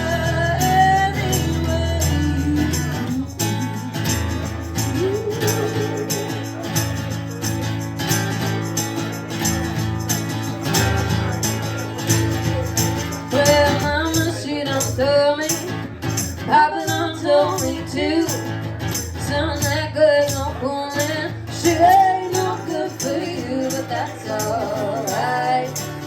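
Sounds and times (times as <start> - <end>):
lead vocals singing: 21.6 - 26.0.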